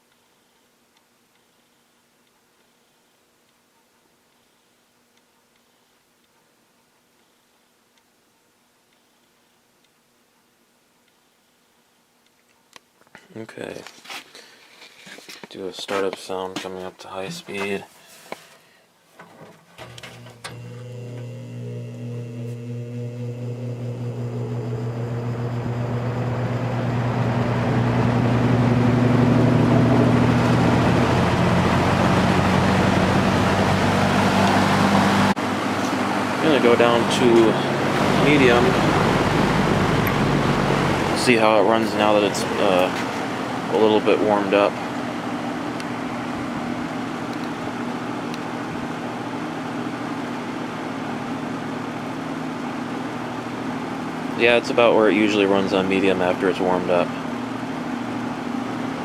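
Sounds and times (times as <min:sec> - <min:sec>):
box fan motor hum and air rush: 0:20.1 - 0:59.0.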